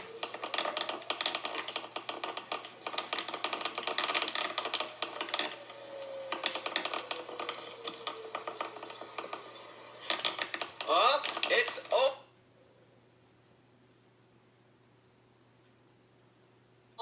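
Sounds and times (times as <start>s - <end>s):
distant warning siren: 0.0s - 1.1s, 4.6s - 11.2s
dense crackling clicks: 0.0s - 12.2s.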